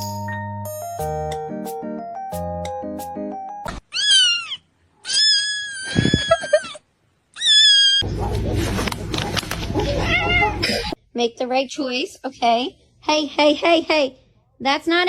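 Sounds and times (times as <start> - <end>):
cat meowing: 3.9 - 6.8, 7.4 - 8.0, 9.9 - 10.7.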